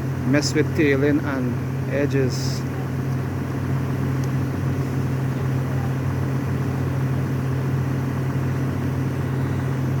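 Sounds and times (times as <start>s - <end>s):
excavator diesel engine drone: 0.0s - 10.0s.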